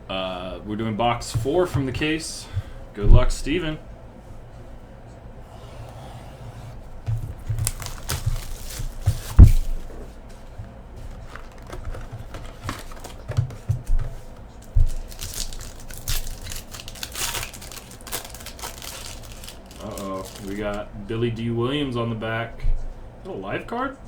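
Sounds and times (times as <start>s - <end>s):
wrapping crinkling and tearing: 7.1s - 10.0s, 11.0s - 13.4s, 14.0s - 20.8s.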